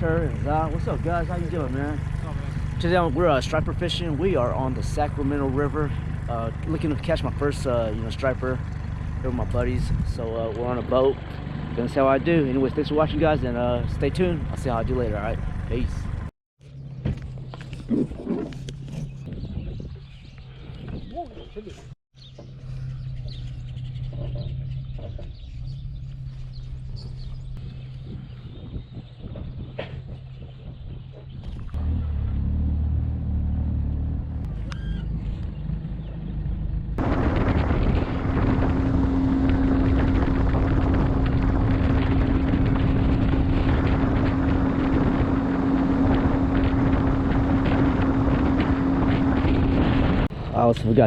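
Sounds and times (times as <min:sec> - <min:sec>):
boat motor humming: 0:00.0 - 0:51.0
wind noise on microphone: 0:09.3 - 0:10.3, 0:17.1 - 0:32.0, 0:37.0 - 0:51.0
high bird chirps: 0:34.6 - 0:36.4.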